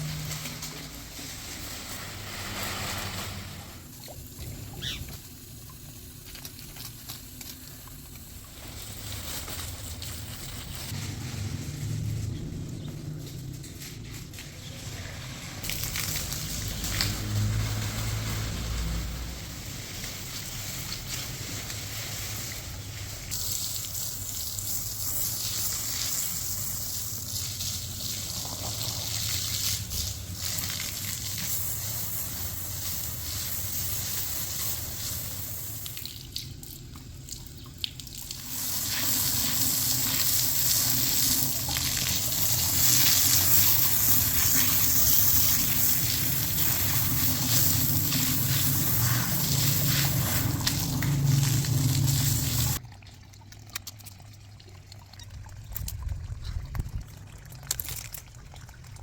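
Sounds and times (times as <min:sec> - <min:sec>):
water running: 0:14.3 - 0:59.0.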